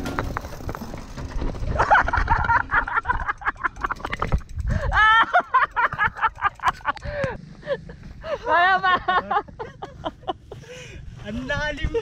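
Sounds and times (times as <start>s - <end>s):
people talking: 11.2s - 12.0s.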